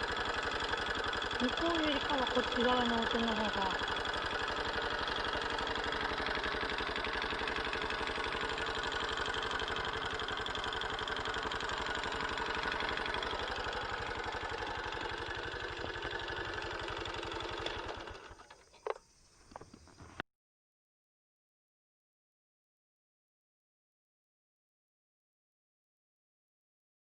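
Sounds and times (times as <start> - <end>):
engine idling with rattling clatter: 0.0 - 20.2.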